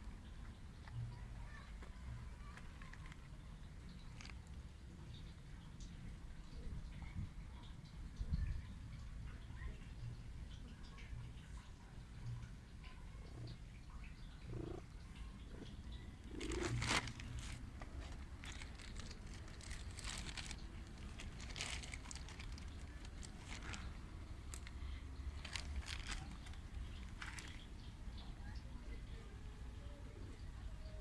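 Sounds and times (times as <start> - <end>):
cat purring: 13.2 - 24.7
brief rustling: 16.4 - 27.6.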